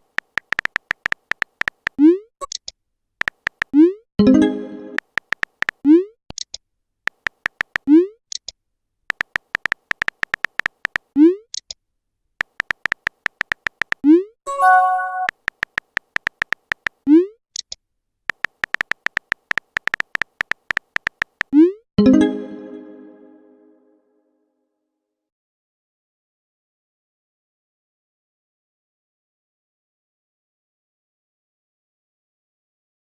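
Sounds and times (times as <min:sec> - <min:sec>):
rapid keyboard tap clicks: 0:00.0 - 0:02.0, 0:03.2 - 0:03.8, 0:04.9 - 0:05.8, 0:07.1 - 0:08.5, 0:09.1 - 0:11.1, 0:12.4 - 0:14.0, 0:15.2 - 0:17.0, 0:18.3 - 0:21.6
electronic chime: 0:14.5 - 0:15.3.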